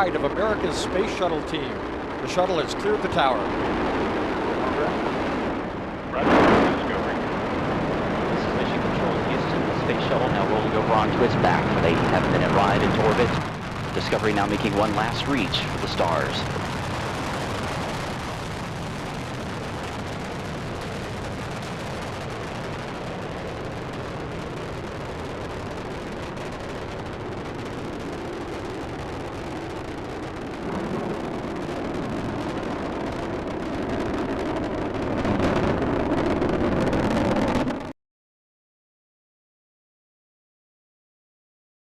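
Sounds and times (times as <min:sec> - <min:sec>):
rocket launch roar: 0:00.0 - 0:37.9.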